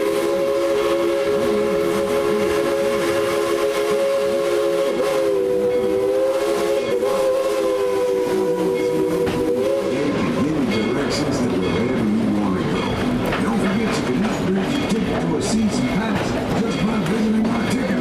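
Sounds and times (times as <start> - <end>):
steam locomotive whistle: 0.0 - 10.8
train rumbling on rails: 0.0 - 18.0.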